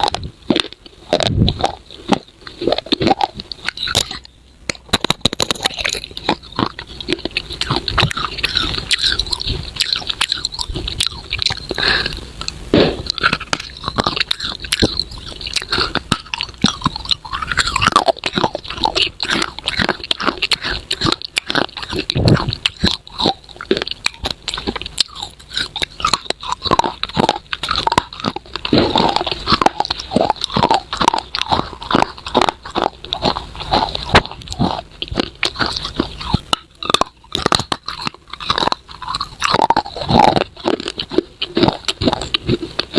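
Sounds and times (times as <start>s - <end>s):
crunching hard clay: 0.0s - 42.9s.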